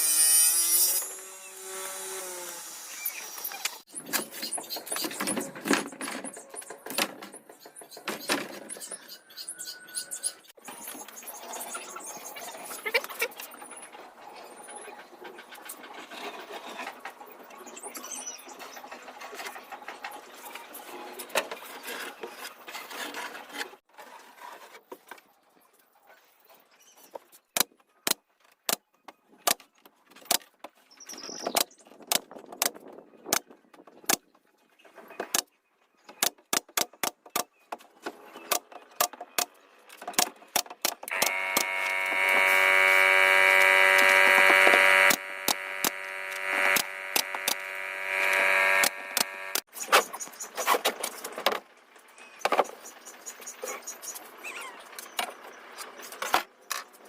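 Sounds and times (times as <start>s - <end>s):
steady noise: 41.1s - 49.6s
steady whining tone: 41.1s - 49.7s.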